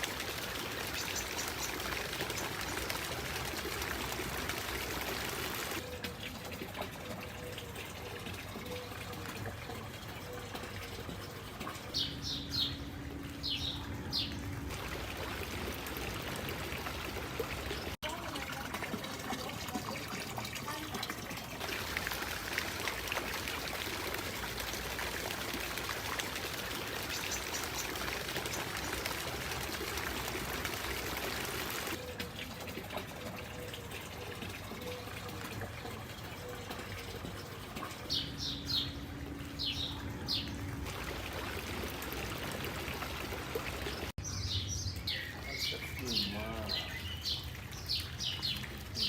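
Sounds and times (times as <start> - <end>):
fountain water splashing: 0.0 - 12.4, 13.6 - 38.8, 39.6 - 44.2
small birds chirping: 0.3 - 3.1, 26.9 - 29.3, 43.9 - 49.0.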